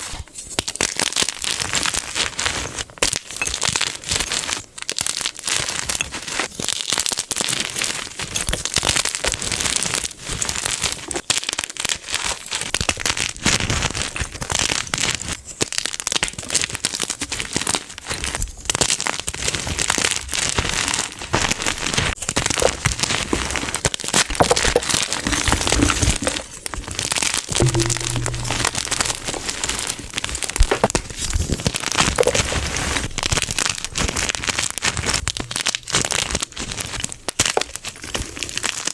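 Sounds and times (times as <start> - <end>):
chalk blocks crunching: 21.5 - 38.9.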